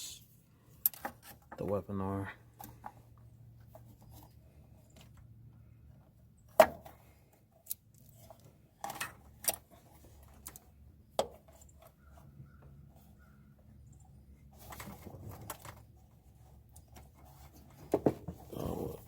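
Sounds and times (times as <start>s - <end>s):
metallic clicks of parts handled: 7.6s - 10.7s.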